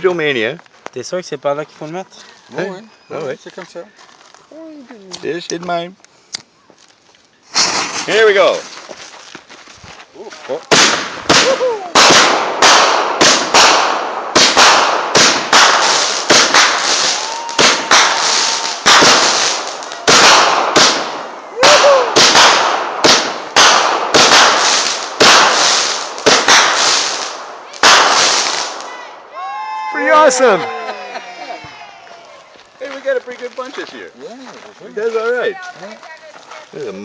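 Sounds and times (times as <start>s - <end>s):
firework whistling: 7.5s - 8.2s, 14.4s - 29.0s
firework shots: 7.5s - 8.6s, 10.7s - 29.2s
firework crackling: 7.5s - 8.9s, 10.5s - 29.6s.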